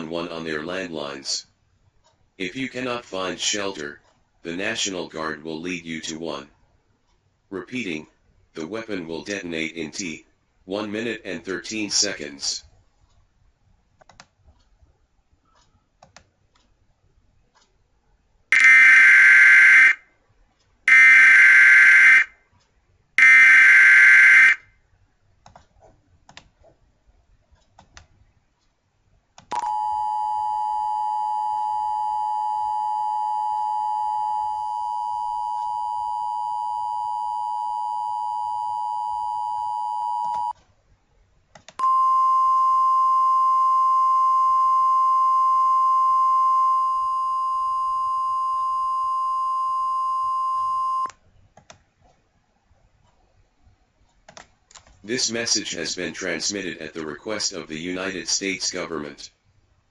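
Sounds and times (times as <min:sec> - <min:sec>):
single steady tone: 0:29.5 - 0:40.6, 0:41.8 - 0:51.2
two-tone attention signal: 0:41.8 - 0:51.1.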